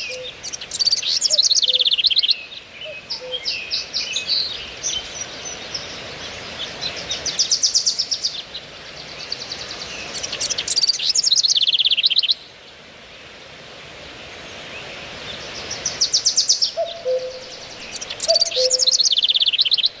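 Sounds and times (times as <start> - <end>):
songbird trills: 0.0 - 6.0, 6.8 - 12.4, 15.4 - 20.0
background hiss: 0.0 - 20.0
low whistled bird notes: 16.7 - 19.9.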